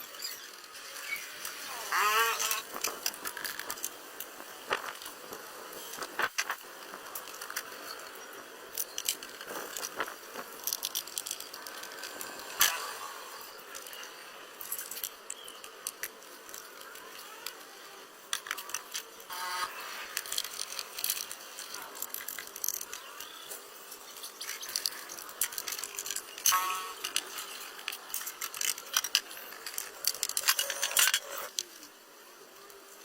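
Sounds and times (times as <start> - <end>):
small hard objects clicking: 0.0 - 32.0.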